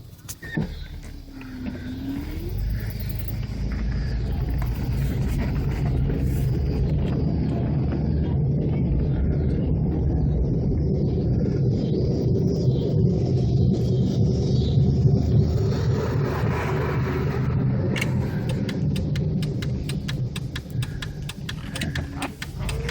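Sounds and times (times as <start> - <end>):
car pulling away: 0.4 - 7.1, 17.9 - 22.9
wheel bearing drone: 16.6 - 22.9.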